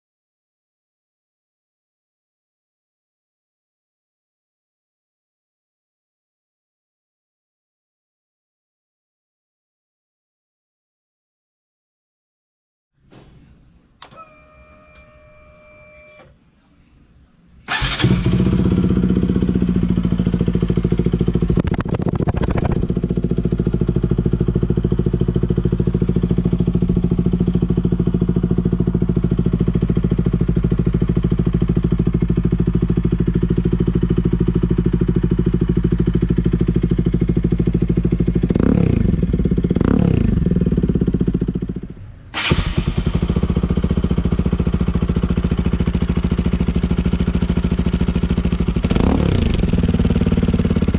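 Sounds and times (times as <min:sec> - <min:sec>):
motorcycle engine idling: 0:17.7 - 0:50.9.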